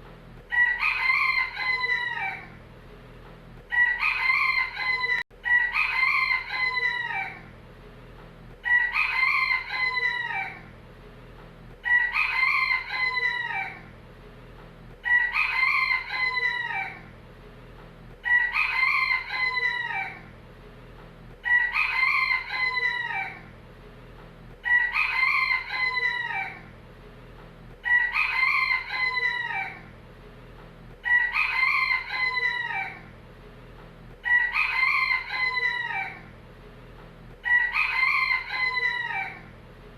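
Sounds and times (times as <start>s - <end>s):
rooster crowing: 0.5s - 2.6s, 3.7s - 7.5s, 8.6s - 10.7s, 11.8s - 13.9s, 15.0s - 17.1s, 18.2s - 20.3s, 21.4s - 23.5s, 24.6s - 26.7s, 27.8s - 29.9s, 31.0s - 33.1s, 34.2s - 36.3s, 37.4s - 39.5s.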